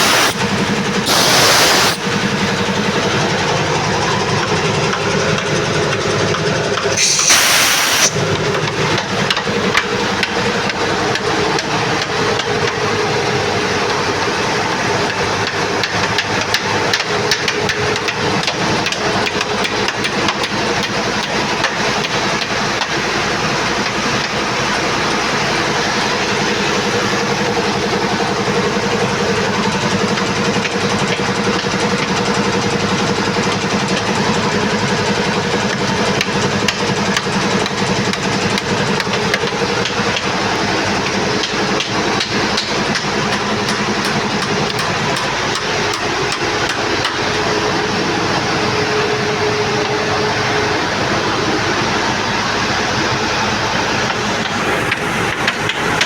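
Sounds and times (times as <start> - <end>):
hissing air burst: 0.0 - 3.2, 6.9 - 8.3
air compressor humming: 0.0 - 13.7.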